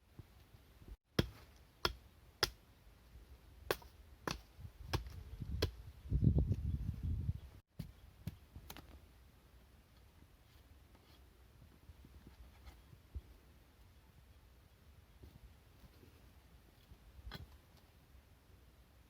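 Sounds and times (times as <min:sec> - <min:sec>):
blade chopping wood: 0:01.2 - 0:02.6, 0:03.7 - 0:05.8.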